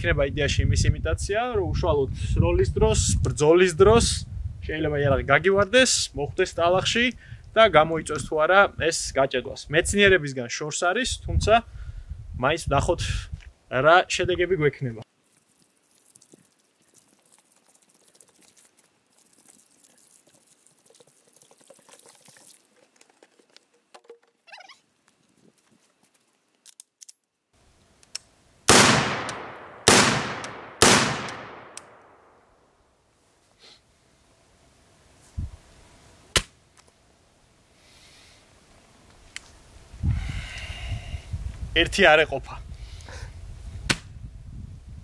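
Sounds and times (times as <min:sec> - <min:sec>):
rifle shots echoing: 0:28.7 - 0:32.4.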